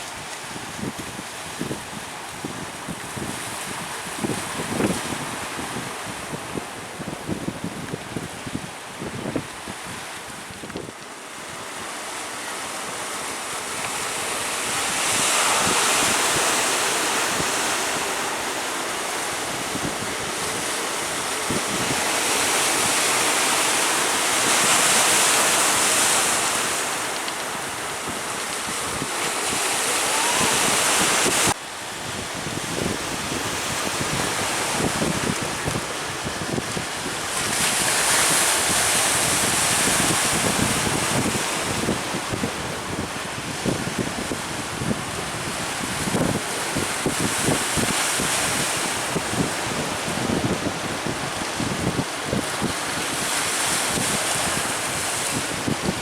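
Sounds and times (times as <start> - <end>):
wind buffeting microphone: 0.0 - 11.8, 13.8 - 56.0
surf breaking: 12.3 - 31.6.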